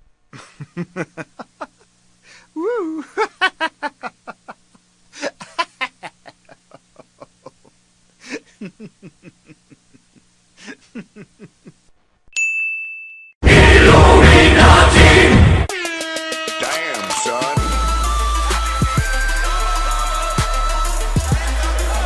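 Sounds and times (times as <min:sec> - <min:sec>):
person laughing: 0:00.3 - 0:11.9
loud music: 0:13.4 - 0:22.0.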